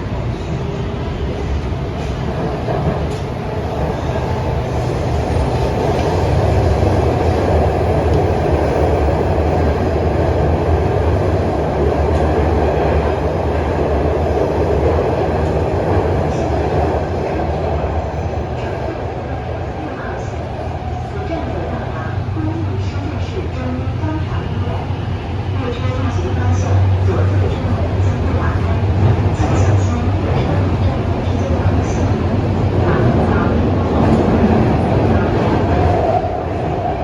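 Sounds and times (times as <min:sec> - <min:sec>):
subway train rumbling in tunnel: 0:00.0 - 0:37.0.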